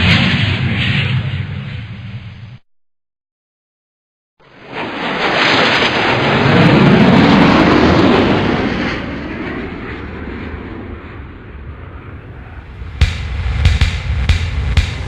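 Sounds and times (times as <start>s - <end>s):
rushing rumble pass-by: 11.7s - 15.0s.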